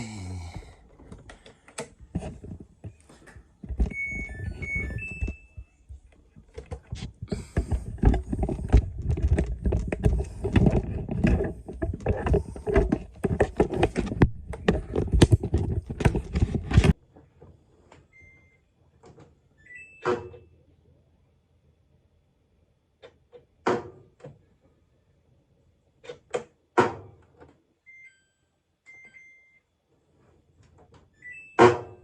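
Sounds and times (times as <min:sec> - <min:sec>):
rattling and knocking: 0:06.4 - 0:17.0.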